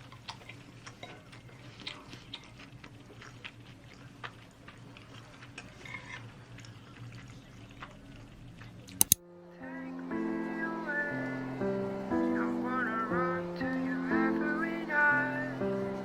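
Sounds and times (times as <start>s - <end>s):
faint chewing: 0.0s - 9.2s.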